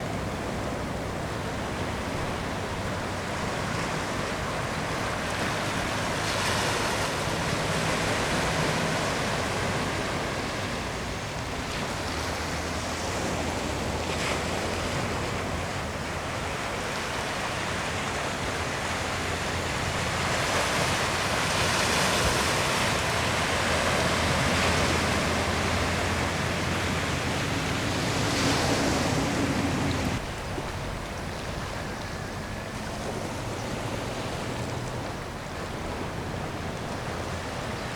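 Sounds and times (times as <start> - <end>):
ocean waves washing in: 0.0 - 37.9
wind buffeting microphone: 0.0 - 37.9.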